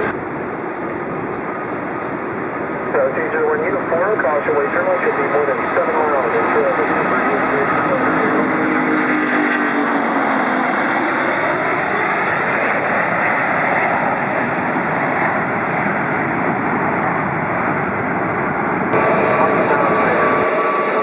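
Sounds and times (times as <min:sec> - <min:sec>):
jet engines rushing: 0:00.0 - 0:21.0
low tones: 0:19.0 - 0:21.0.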